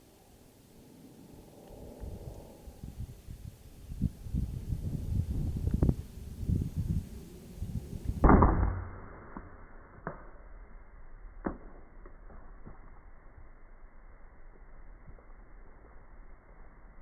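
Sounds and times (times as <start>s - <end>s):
faint clicks: 1.6s - 2.5s.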